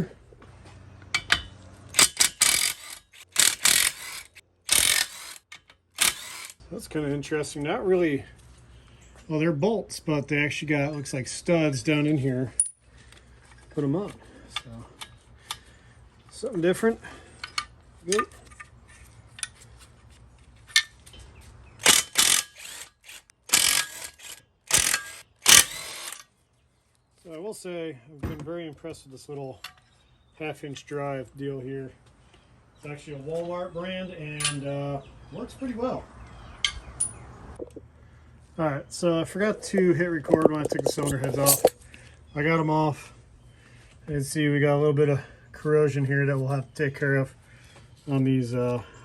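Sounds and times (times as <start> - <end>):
socket ratchet clicking: 2.0 - 6.6, 21.8 - 26.2.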